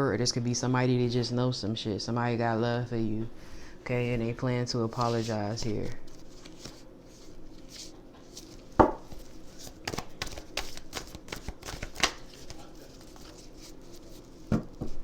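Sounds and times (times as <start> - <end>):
card knock on table: 8.8 - 9.0
cards tapping on a table: 8.8 - 9.2, 9.8 - 12.6.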